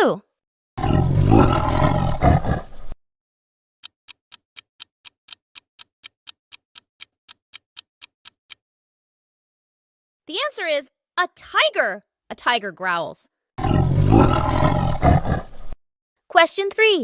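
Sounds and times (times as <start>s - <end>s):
tiger growling: 0.8s - 3.0s, 13.6s - 15.8s
clock ticking: 3.8s - 8.6s.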